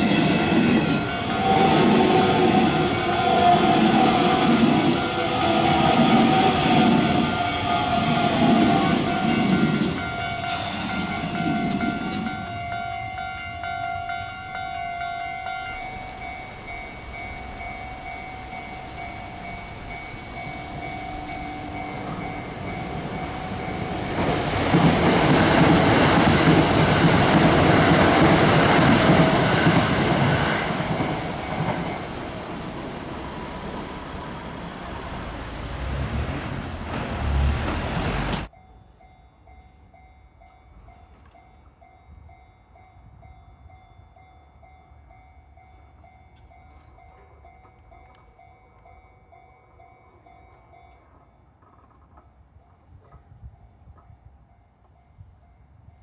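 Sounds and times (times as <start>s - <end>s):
level-crossing warning bell: 0.0s - 35.5s, 38.4s - 51.9s
train rumbling over rail joints: 0.0s - 38.6s.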